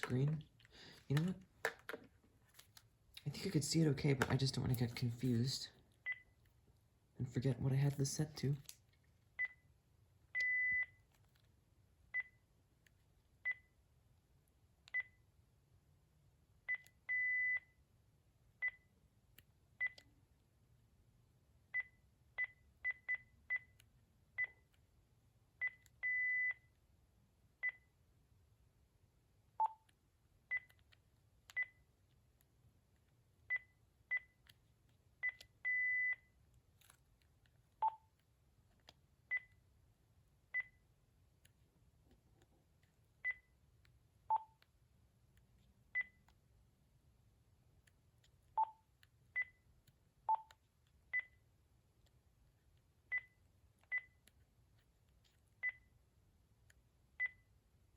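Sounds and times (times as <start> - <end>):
phone key beeps: 10.4 - 11.0, 35.2 - 36.3, 37.8 - 38.1, 48.6 - 49.6, 50.3 - 50.6.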